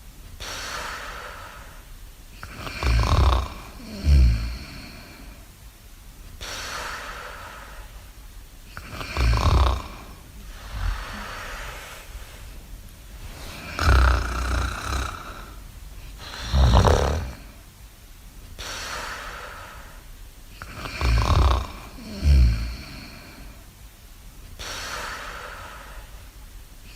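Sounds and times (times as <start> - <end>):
loud rasping snores: 2.4 - 5.2, 8.8 - 11.6, 13.4 - 15.6, 16.2 - 17.6, 20.6 - 23.4
breathy exhales: 8.8 - 17.6.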